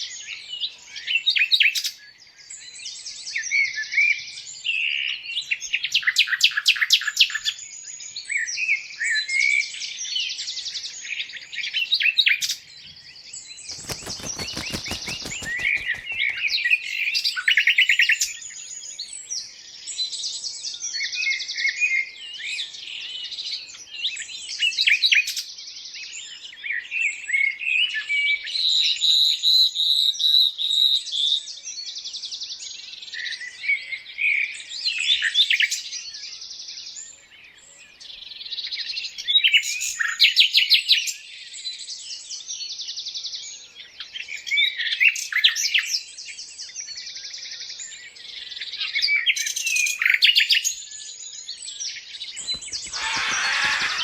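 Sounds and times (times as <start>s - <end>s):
small birds chirping and singing: 0.0s - 54.0s
fast rattling clicks: 13.8s - 16.7s.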